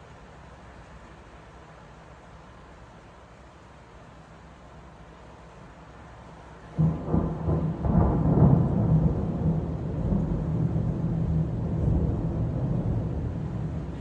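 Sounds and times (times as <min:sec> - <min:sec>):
thunder crack and rumble: 0:06.8 - 0:14.0.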